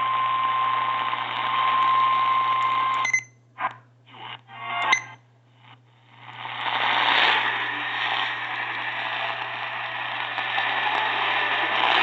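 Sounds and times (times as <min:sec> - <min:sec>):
low electrical hum: 0:00.0 - 0:12.0
radio static hiss: 0:05.6 - 0:12.0.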